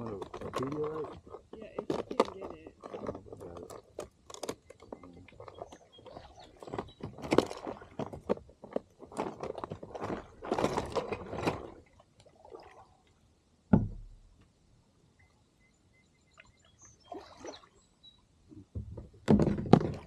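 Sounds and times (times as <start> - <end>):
water splashing around kayak: 0.0 - 14.2, 16.3 - 18.0
knocks against hull: 13.7 - 14.2, 18.7 - 20.0
loud thump: 13.7 - 14.2.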